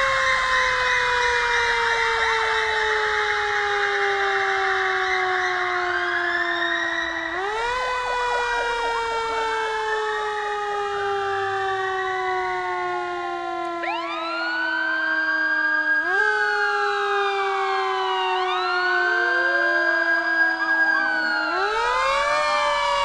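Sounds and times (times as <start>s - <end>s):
police sirens wailing: 0.0s - 23.0s.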